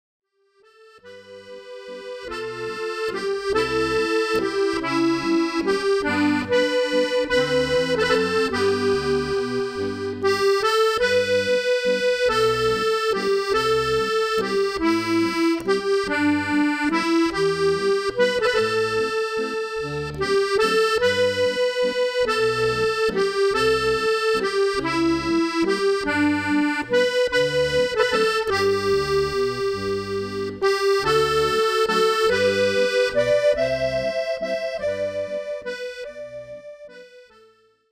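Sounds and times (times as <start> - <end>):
solo accordion: 0.4 - 37.9.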